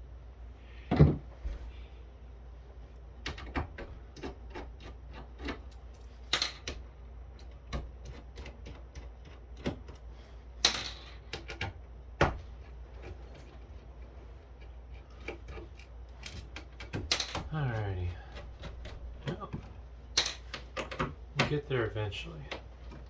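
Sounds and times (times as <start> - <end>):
circuit boards and metal parts knocking: 15.2 - 17.5.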